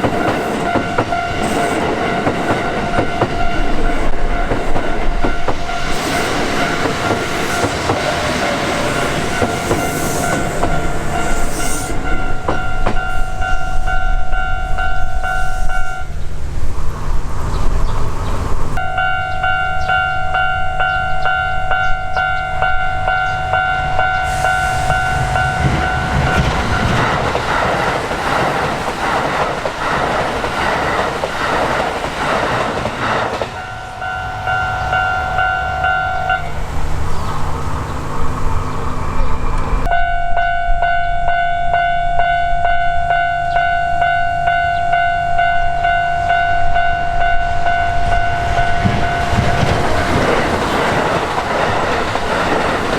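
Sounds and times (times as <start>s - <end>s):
train wheels clattering over rails: 0.0s - 13.3s, 24.2s - 33.7s, 48.8s - 52.9s
level-crossing alarm ringing: 0.0s - 16.2s, 18.8s - 29.4s, 33.5s - 36.6s, 39.8s - 52.8s.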